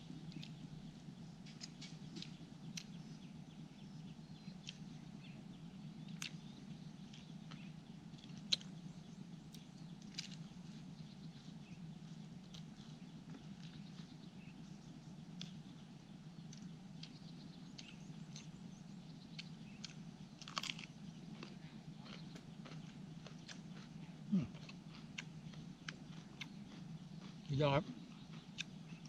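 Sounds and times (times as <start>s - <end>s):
steady low hum: 0.0s - 29.0s
person chewing: 6.1s - 6.4s, 7.0s - 8.8s, 9.5s - 11.6s, 12.4s - 14.1s, 15.4s - 15.6s, 17.8s - 18.6s, 19.4s - 29.0s.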